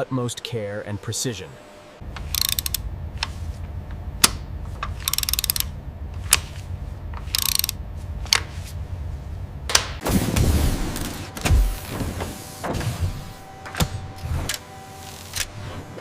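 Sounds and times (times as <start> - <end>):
machinery hum: 0.0 - 16.0
rapid ratcheting: 2.2 - 2.8, 4.9 - 5.7, 7.2 - 7.8
sharp machine clicks: 2.2 - 2.8, 5.0 - 5.7, 7.3 - 7.8.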